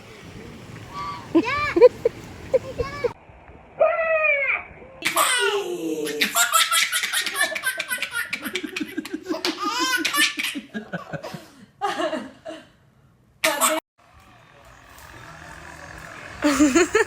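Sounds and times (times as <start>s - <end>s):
small child laughing: 1.3s - 3.2s, 6.2s - 11.0s, 16.4s - 17.0s.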